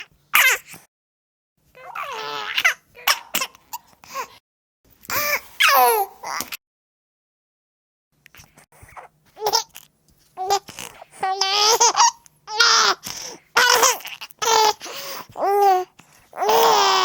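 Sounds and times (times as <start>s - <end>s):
baby babbling: 1.8s - 3.6s, 5.1s - 6.6s, 8.9s - 9.8s, 10.4s - 17.0s
baby laughing: 1.8s - 3.9s, 5.1s - 6.5s, 9.4s - 9.8s, 10.4s - 13.0s, 13.6s - 17.0s.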